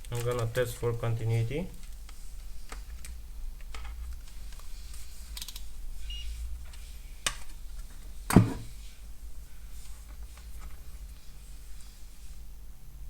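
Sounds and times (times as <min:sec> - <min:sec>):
knock on workbench: 0:08.3 - 0:08.7.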